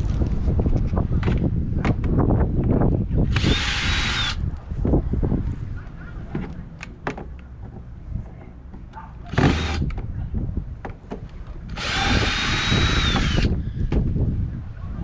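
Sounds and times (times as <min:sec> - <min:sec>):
power drill whining: 0:03.3 - 0:04.4, 0:09.3 - 0:09.9, 0:11.7 - 0:13.6.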